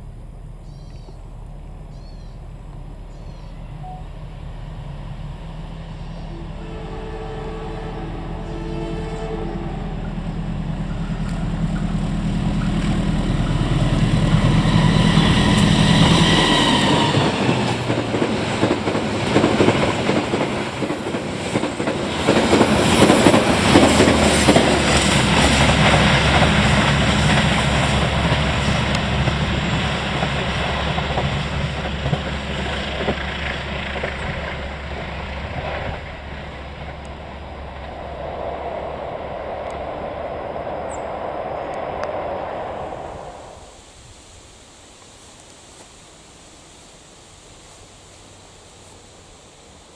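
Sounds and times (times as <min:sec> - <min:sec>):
diesel train engine drone: 0:00.0 - 0:44.2
train wheels clattering over rail joints: 0:09.9 - 0:43.2.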